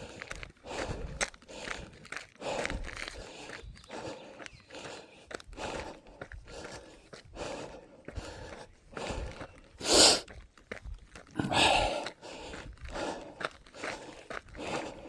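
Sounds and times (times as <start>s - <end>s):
footsteps on trail: 0.0s - 15.0s
runner panting: 0.0s - 15.0s
loud exhales: 9.8s - 10.3s, 11.4s - 12.1s.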